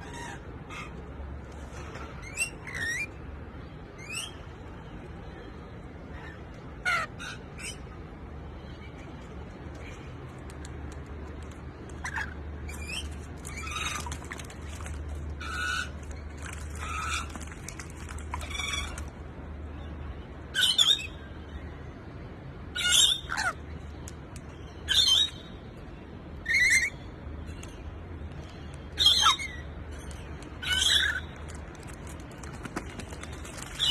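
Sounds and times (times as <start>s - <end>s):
parrots squawking: 6.8s - 7.8s, 12.0s - 14.1s, 22.8s - 23.6s.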